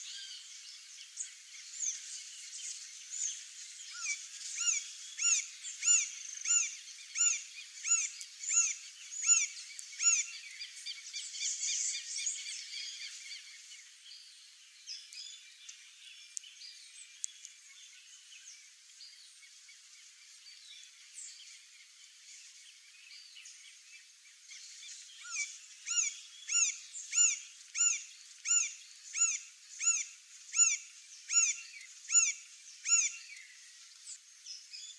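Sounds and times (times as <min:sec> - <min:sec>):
woodpecker ringing calls: 0:25.3 - 0:33.2.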